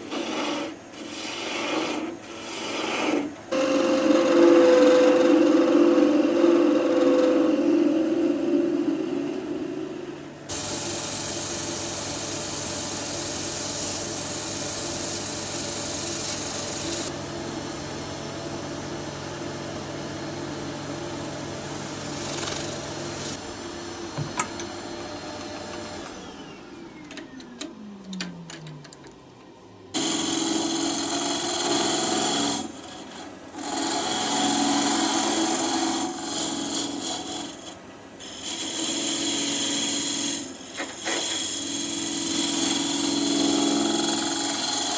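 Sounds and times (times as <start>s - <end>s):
turning tool cutting wood: 0.0s - 17.2s, 22.0s - 23.4s, 30.0s - 44.9s
wood lathe motor running: 0.1s - 18.9s, 20.2s - 23.4s, 30.0s - 44.9s.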